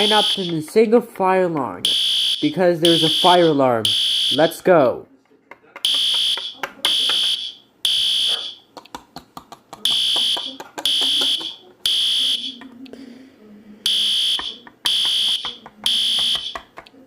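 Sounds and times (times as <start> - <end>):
fire alarm blasts: 0.0 - 0.7, 1.8 - 4.6, 5.9 - 8.6, 9.9 - 12.6, 13.9 - 16.7
faint clicks and taps: 8.8 - 11.6, 14.3 - 17.0.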